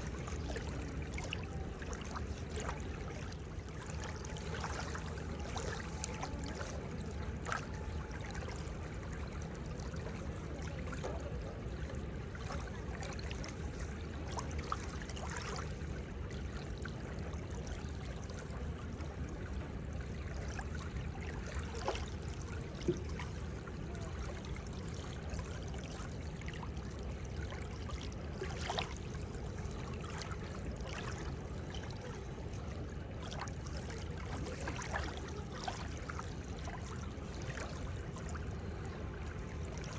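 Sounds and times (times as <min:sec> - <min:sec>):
seawater washing at shore: 0:00.0 - 0:39.9
small sharp splashes: 0:33.2 - 0:38.7.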